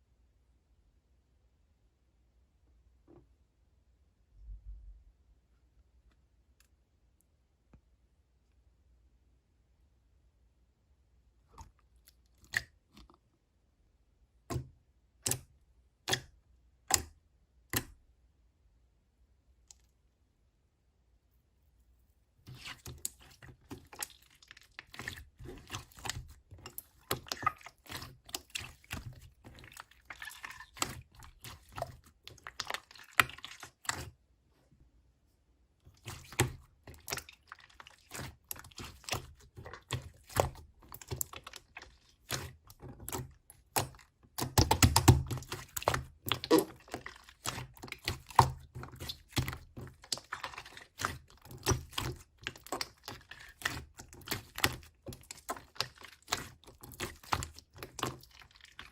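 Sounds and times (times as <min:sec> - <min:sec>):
slime squishing: 0:11.4 - 0:13.5, 0:14.3 - 0:18.1, 0:22.0 - 0:34.3, 0:35.7 - 0:58.9.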